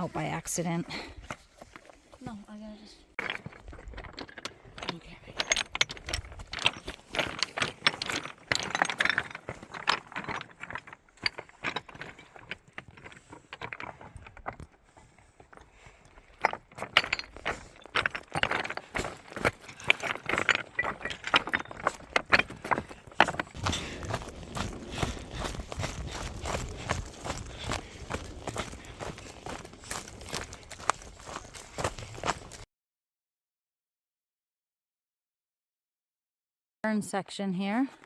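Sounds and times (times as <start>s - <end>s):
clinking and rattling: 3.2s - 32.6s.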